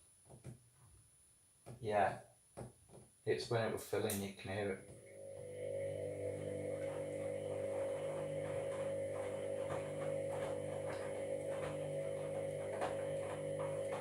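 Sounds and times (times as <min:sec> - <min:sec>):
washing machine humming: 0:04.8 - 0:14.0.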